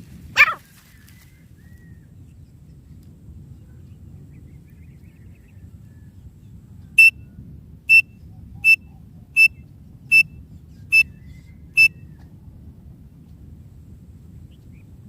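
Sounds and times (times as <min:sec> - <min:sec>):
high whistled bird call: 0:07.0 - 0:07.2.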